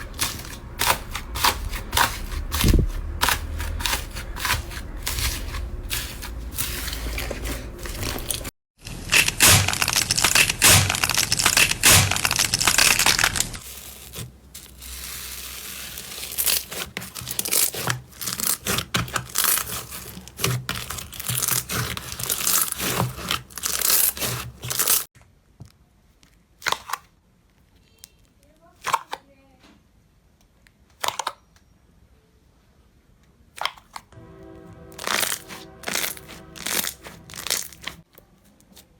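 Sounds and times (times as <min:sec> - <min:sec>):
slime crackling and popping: 0:08.0 - 0:25.1, 0:35.0 - 0:38.0.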